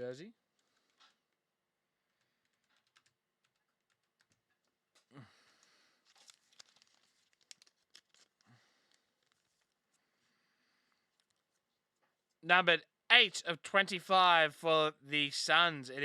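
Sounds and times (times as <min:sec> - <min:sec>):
card sleeves clicking and crinkling: 0:02.4 - 0:10.0.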